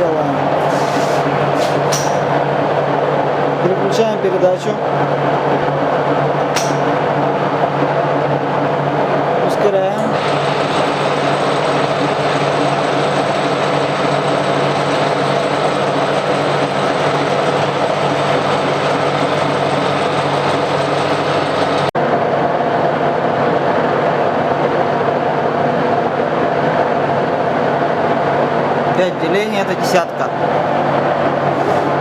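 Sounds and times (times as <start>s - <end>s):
milling machine hum and whirr: 0.0s - 22.0s.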